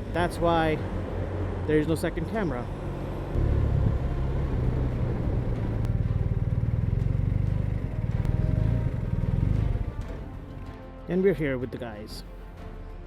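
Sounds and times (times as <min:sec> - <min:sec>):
motorcycle engine droning: 0:00.9 - 0:10.3.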